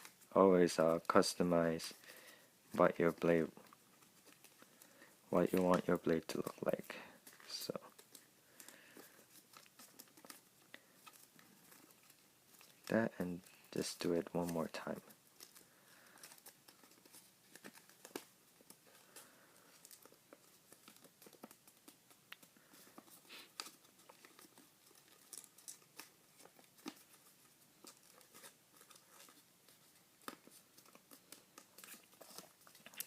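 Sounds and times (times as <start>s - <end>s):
paper being folded and creased: 0.0s - 2.0s, 2.7s - 33.0s.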